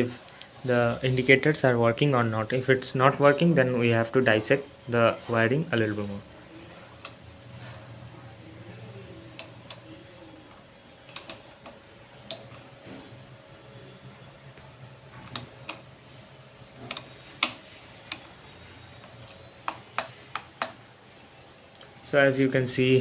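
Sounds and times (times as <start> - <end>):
faint steady hum: 0.0 - 23.0
indicator switch clicking: 9.3 - 9.9, 11.1 - 12.6, 15.2 - 15.8, 16.8 - 18.4, 19.3 - 20.8.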